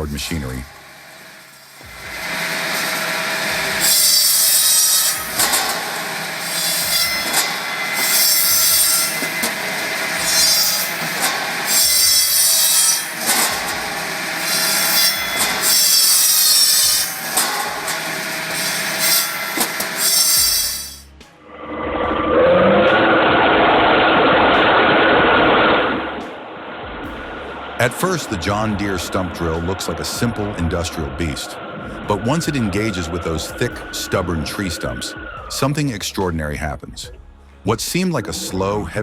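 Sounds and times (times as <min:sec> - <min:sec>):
firewood machine motor hum: 0:00.0 - 0:35.7
saw cutting into wood: 0:00.7 - 0:21.2.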